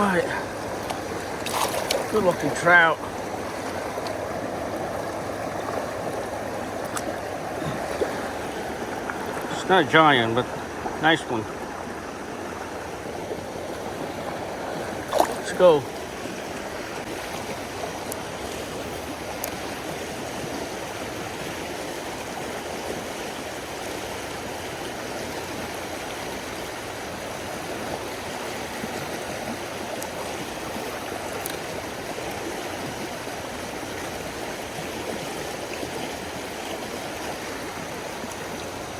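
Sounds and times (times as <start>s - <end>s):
creek water babbling: 0.0s - 38.9s.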